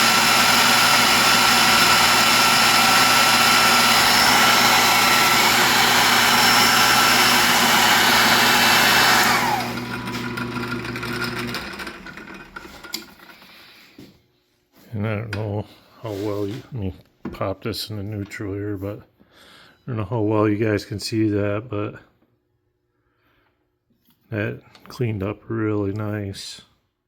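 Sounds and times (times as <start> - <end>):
lathe motor hum: 0.0 - 13.4
grinder winding down: 0.0 - 13.5
grinder whining: 0.0 - 13.6.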